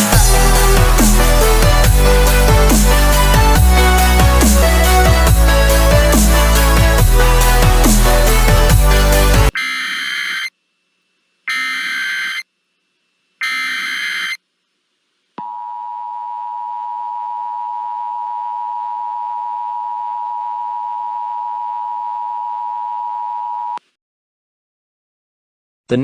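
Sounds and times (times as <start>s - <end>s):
harsh digital data bursts: 11.5s - 12.4s, 13.4s - 14.4s.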